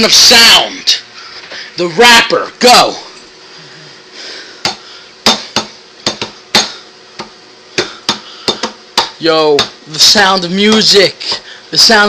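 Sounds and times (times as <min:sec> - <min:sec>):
sharp knocks on hard surface: 0:04.6 - 0:09.8.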